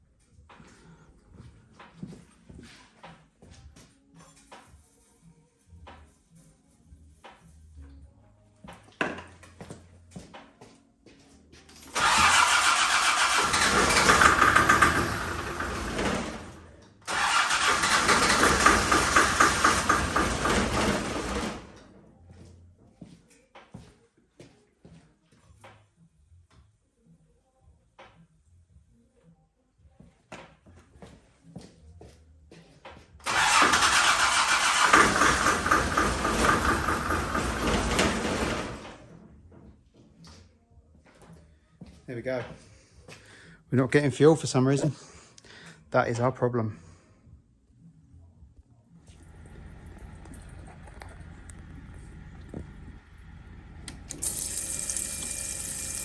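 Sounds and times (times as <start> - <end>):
diesel engine cranking on starter: 11.9 - 22.0, 33.2 - 39.2, 49.1 - 56.0.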